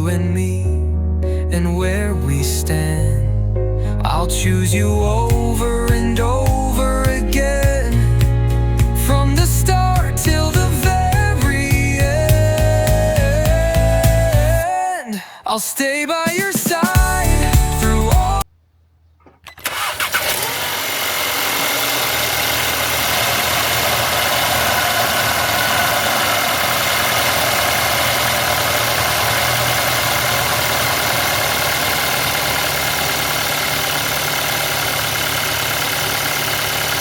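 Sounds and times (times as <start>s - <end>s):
car engine starting and idling: 19.2s - 37.0s.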